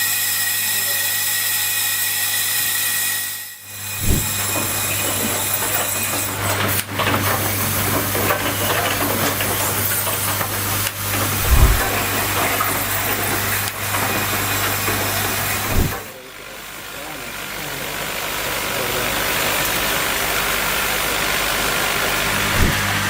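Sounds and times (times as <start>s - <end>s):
machine hiss: 3.7s - 5.6s, 14.5s - 16.2s
dull thump: 4.0s - 4.3s, 11.4s - 12.0s, 15.7s - 16.0s, 22.6s - 22.9s
low machine hum: 11.0s - 13.3s.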